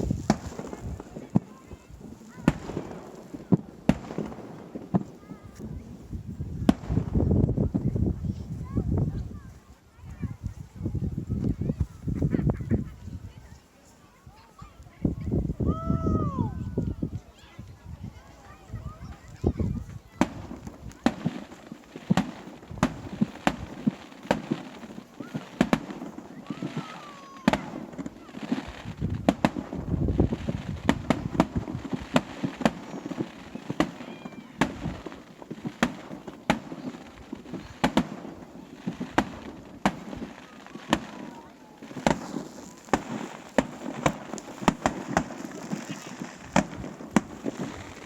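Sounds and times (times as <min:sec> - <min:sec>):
fireworks sharp bangs: 0:00.0 - 0:07.9, 0:19.1 - 0:48.0.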